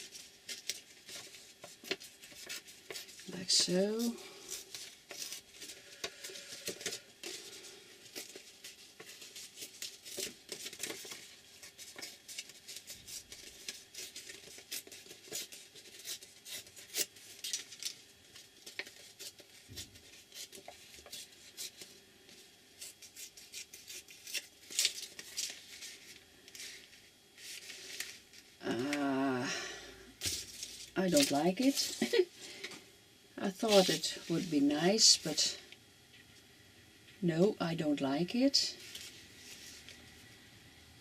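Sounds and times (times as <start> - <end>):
paper tearing and rustling: 0.0 - 29.1, 30.2 - 32.2, 33.6 - 34.6.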